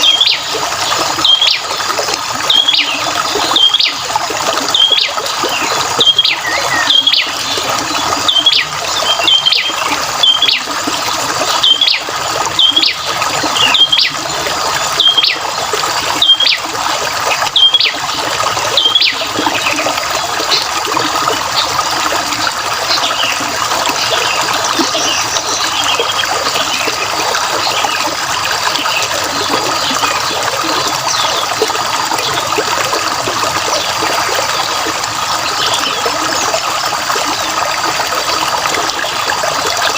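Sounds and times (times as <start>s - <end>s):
water trickling and splashing: 0.0s - 39.9s
bird chirping: 6.0s - 7.4s.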